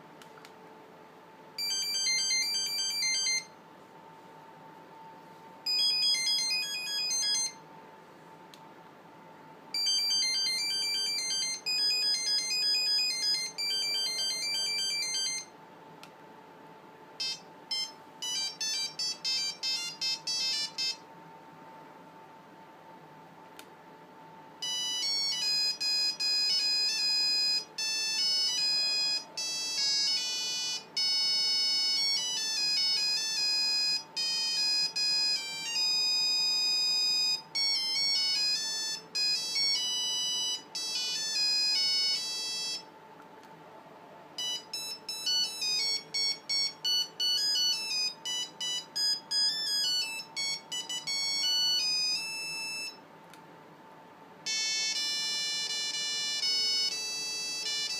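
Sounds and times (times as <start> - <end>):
fast ringtone tune: 1.6 - 3.5, 5.7 - 7.6, 9.8 - 15.5, 17.2 - 21.0, 24.6 - 42.9, 44.4 - 53.0, 54.5 - 57.9
phone ringtone beeping melody: 1.6 - 3.6, 5.7 - 7.6, 9.8 - 15.5, 17.2 - 21.1, 24.6 - 42.9, 44.4 - 53.0, 54.4 - 57.9.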